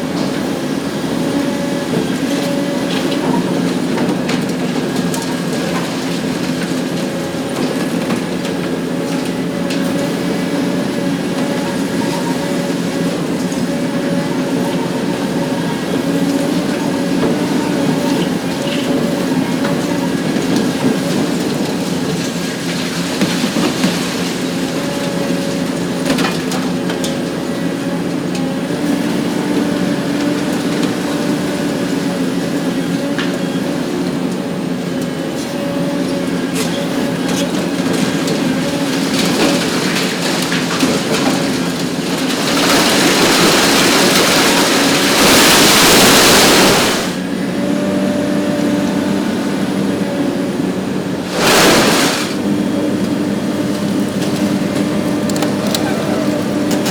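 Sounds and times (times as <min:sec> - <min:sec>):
excavator engine humming: 0:00.0 - 0:56.9
concrete cracking: 0:37.2 - 0:47.2, 0:51.3 - 0:56.9.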